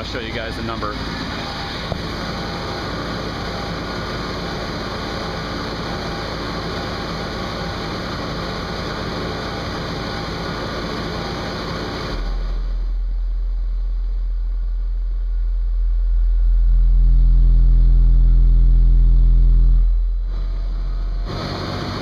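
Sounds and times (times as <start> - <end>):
buzzing distorted rattle: 0.0 - 22.0
deep subwoofer bass tone: 11.9 - 22.0.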